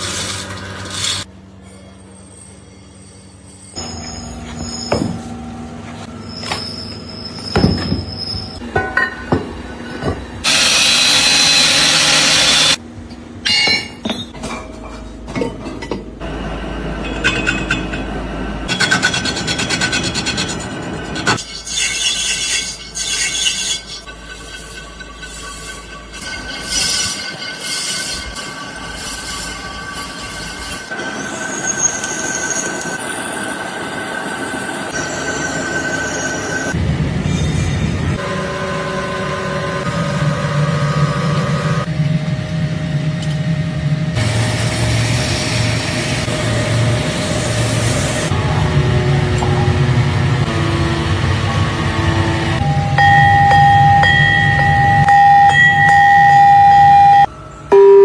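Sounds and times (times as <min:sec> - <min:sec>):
metal scraping and squealing: 0:00.0 - 0:08.7, 0:18.6 - 0:33.4
power tool grinding metal: 0:10.4 - 0:12.8
steady high tone: 0:52.5 - 0:58.0.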